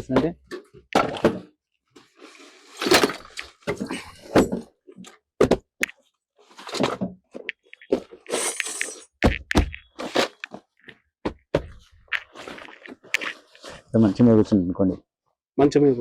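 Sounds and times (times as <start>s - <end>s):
knocks and thuds on wood: 5.4s - 5.9s, 9.2s - 10.5s, 11.2s - 13.3s
creaking scrapes: 6.5s - 11.0s, 11.7s - 14.4s.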